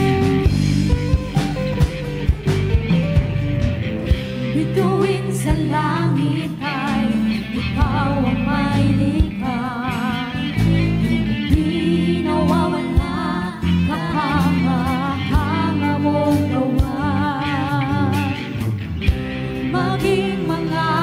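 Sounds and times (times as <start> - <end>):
bass guitar: 0.0 - 21.0
drums: 0.0 - 21.0
guitar: 0.0 - 21.0
voices singing long notes: 4.5 - 18.6, 19.6 - 21.0.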